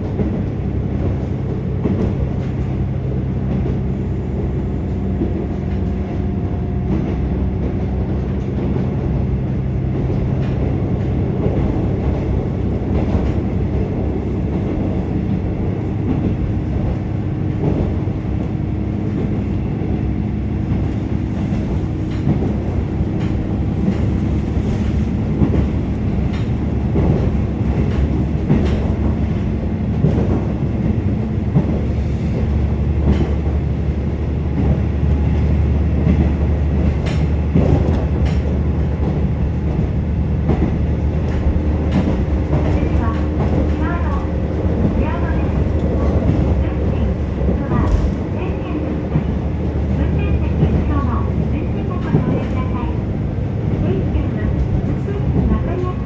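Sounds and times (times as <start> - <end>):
wheels clicking over rail joints: 20.7 - 31.8, 32.9 - 51.3.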